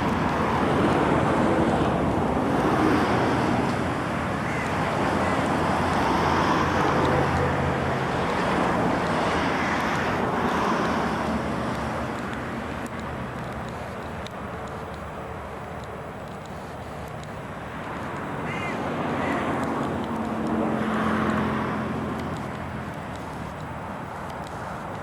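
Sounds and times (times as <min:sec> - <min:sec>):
wind rushing over microphone: 0:00.0 - 0:13.3.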